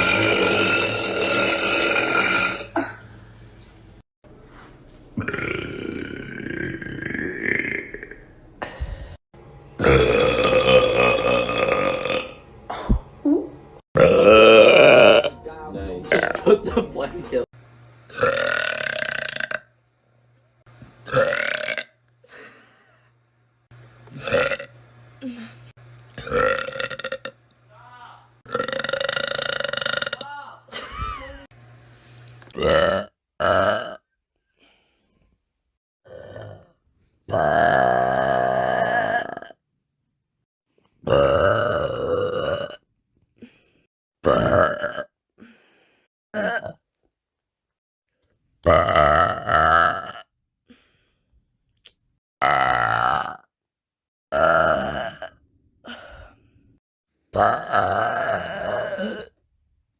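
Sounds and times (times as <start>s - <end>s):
girl burping: 0.0s - 3.1s, 9.8s - 15.3s, 16.1s - 16.4s, 28.5s - 30.4s, 46.4s - 46.8s, 57.4s - 59.4s.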